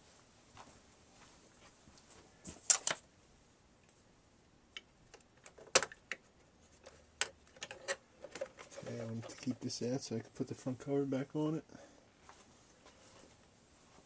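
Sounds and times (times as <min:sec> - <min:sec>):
plastic parts clicking: 0:04.8 - 0:09.5.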